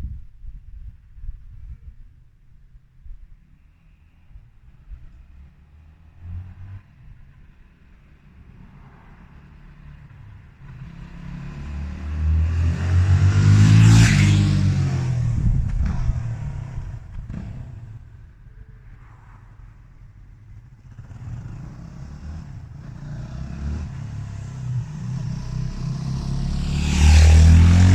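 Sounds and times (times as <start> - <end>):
motorcycle engine passing by: 8.1 - 27.9.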